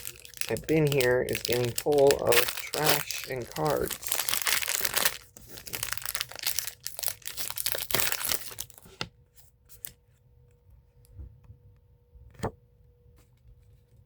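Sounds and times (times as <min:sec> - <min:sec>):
foil wrapper tearing and crinkling: 0:00.0 - 0:08.9.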